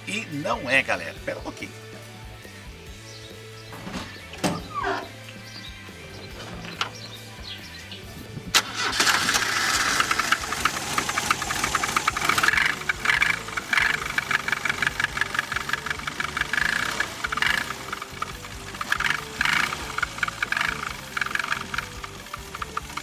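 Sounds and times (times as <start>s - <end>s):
engine starting and running: 3.7s - 23.0s
fast ticking engine knock: 8.6s - 23.0s.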